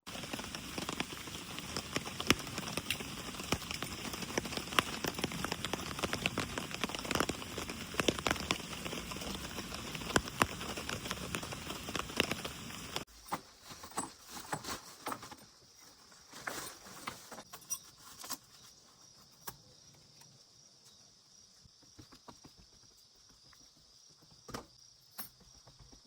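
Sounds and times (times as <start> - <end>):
rain falling: 0.1 - 13.1
raindrops ticking close by: 0.1 - 13.1.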